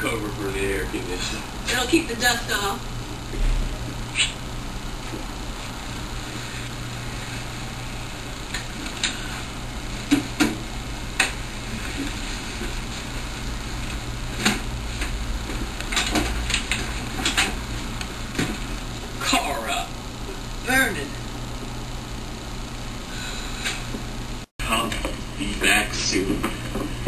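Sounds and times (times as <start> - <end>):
low hum: 0.0 - 27.0.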